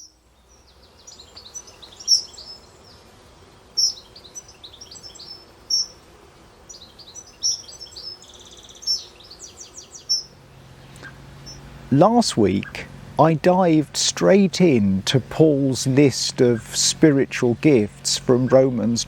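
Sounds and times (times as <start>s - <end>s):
loud bird call: 0.0s - 2.8s, 3.8s - 6.0s, 6.7s - 13.8s
songbirds singing and chirping: 0.0s - 19.0s.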